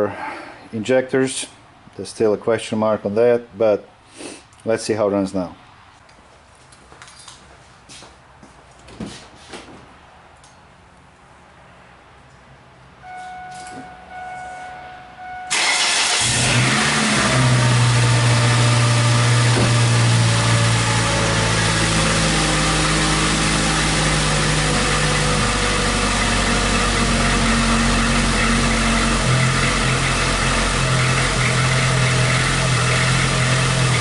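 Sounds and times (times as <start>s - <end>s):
short electronic beeps: 13.0s - 15.6s
car engine starting and idling: 13.0s - 34.0s.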